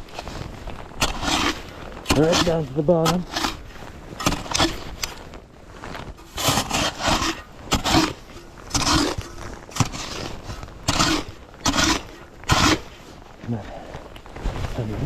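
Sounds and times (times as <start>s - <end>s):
footsteps crunching in snow: 0.0s - 15.0s.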